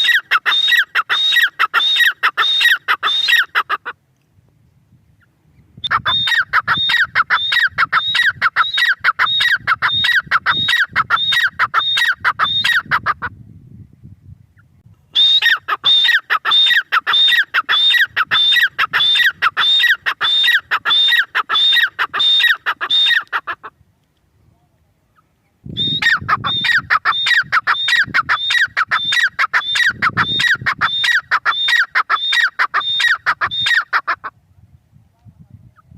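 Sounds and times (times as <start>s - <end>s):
bird shrill repeated notes: 0.0s - 3.6s, 5.9s - 13.0s, 15.2s - 23.4s, 25.8s - 34.0s.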